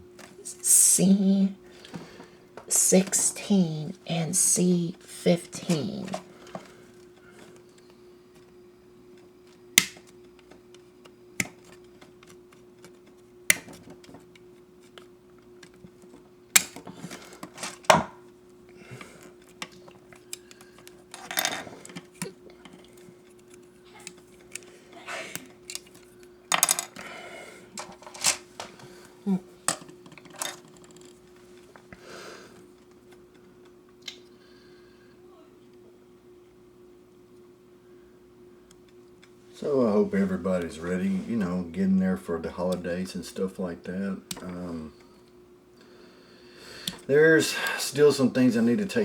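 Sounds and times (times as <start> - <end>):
faint hum: 0.0 - 49.0
plastic parts clicking and clattering: 29.7 - 31.2.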